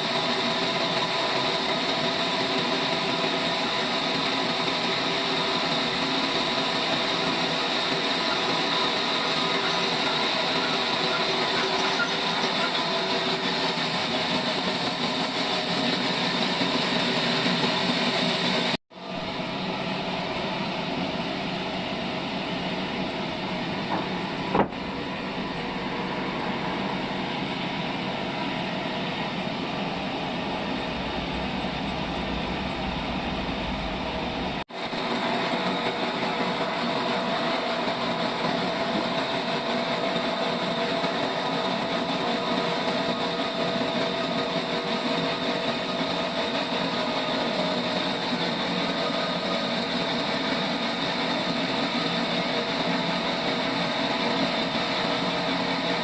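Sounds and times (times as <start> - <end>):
sawmill saw and trolley running: 0.0 - 56.0
brief knock: 23.9 - 24.8.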